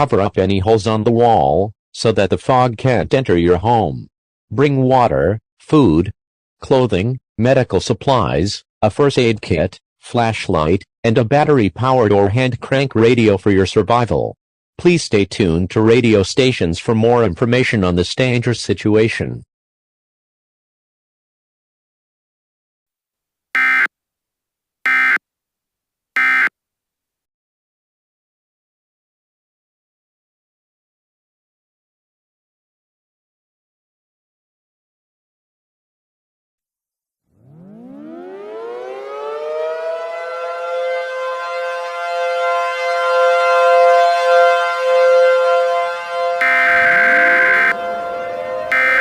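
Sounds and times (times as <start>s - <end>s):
civil defense siren: 37.4s - 49.0s
buzzy digital data bursts: 46.4s - 47.8s, 48.7s - 49.0s.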